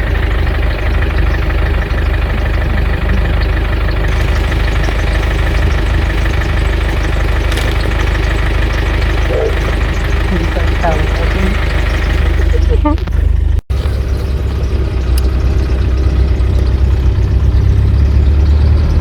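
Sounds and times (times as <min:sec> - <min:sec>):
car engine running: 0:00.0 - 0:19.0.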